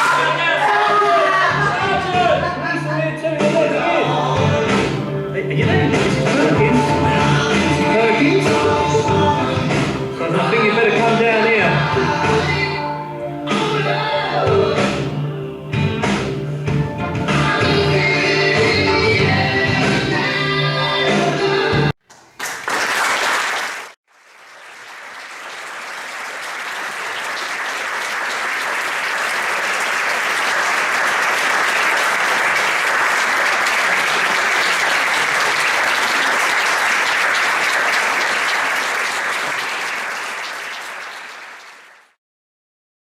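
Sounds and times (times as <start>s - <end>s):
audience applauding: 22.1s - 42.2s.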